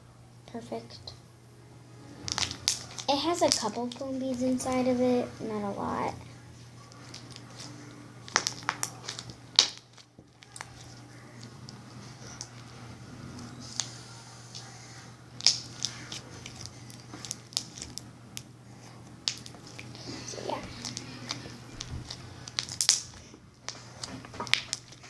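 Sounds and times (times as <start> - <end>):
crunchy slime crackling and popping: 2.2 - 6.2, 6.8 - 12.8, 13.4 - 25.0.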